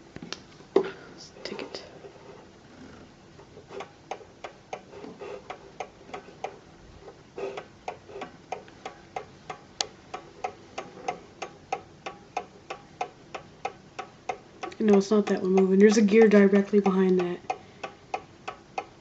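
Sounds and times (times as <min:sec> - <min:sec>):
clock ticking: 0:07.5 - 0:19.0.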